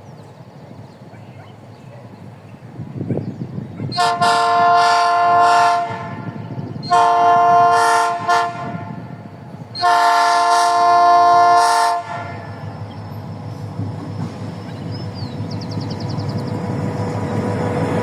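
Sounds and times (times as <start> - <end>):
passing train rumble: 0.0 - 18.0
locomotive air horn blasts: 4.0 - 12.7.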